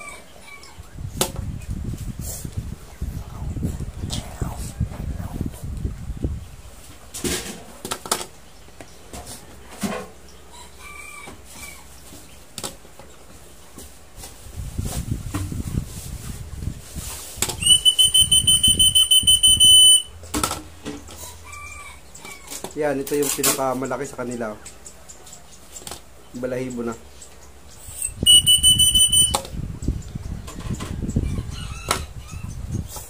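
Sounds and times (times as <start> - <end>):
bird chick begging calls: 27.8 - 29.4.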